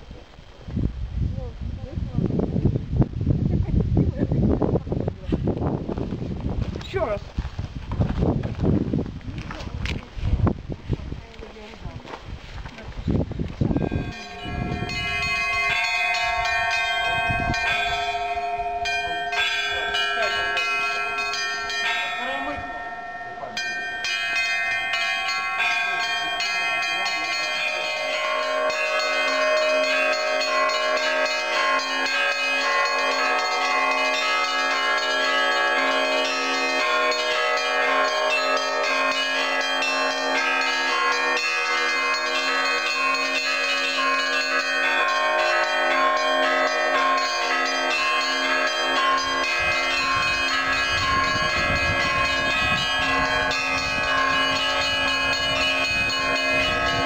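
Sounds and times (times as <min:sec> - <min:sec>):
church bells ringing: 0:13.7 - 0:57.0.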